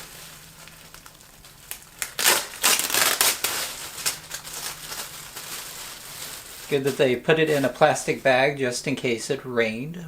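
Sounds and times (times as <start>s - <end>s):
plastic bag crinkling: 0.0s - 9.2s.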